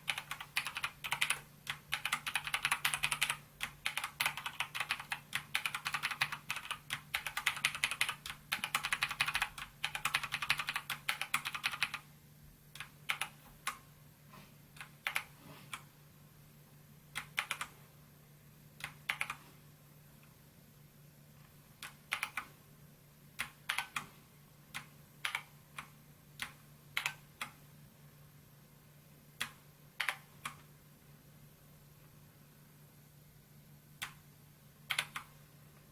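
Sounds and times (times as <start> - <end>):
mechanical keyboard typing: 0.0 - 12.0, 12.8 - 13.8, 14.8 - 15.8, 17.2 - 17.8, 18.8 - 19.4, 21.8 - 22.5, 23.4 - 24.1, 24.7 - 27.6, 29.4 - 30.7, 34.9 - 35.4
low electrical hum: 0.0 - 35.9.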